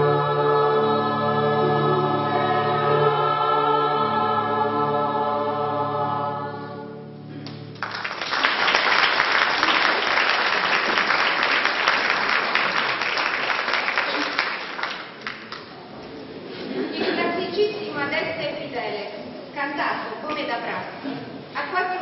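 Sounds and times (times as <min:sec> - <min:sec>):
choir singing held chords: 0:00.0 - 0:07.4
audience applause: 0:07.4 - 0:15.8.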